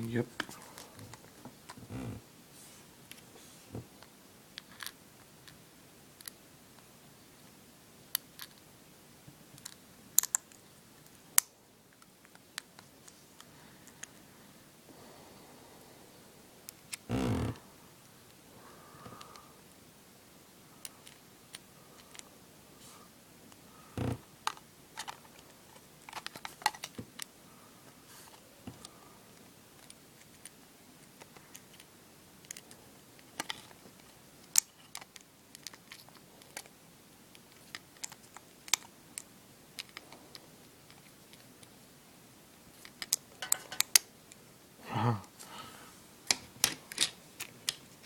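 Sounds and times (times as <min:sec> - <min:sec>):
small clicks and taps of tools: 0:42.8 - 0:44.0.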